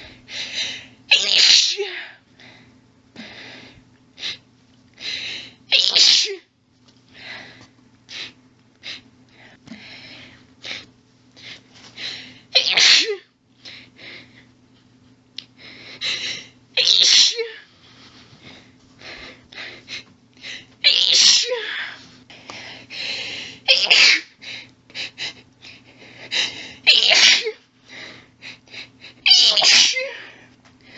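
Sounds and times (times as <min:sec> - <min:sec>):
woman sneezing: 0:01.1 - 0:02.0, 0:05.7 - 0:06.5, 0:12.6 - 0:13.3, 0:16.8 - 0:17.6, 0:20.8 - 0:21.8, 0:23.7 - 0:24.4, 0:26.8 - 0:27.6, 0:29.2 - 0:30.3.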